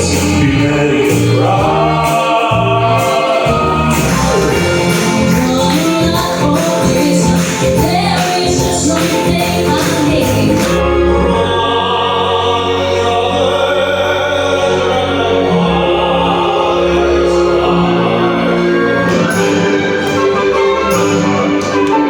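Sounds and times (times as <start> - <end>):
percussion beat: 0.0 - 10.8
choir-like singing: 0.0 - 22.0.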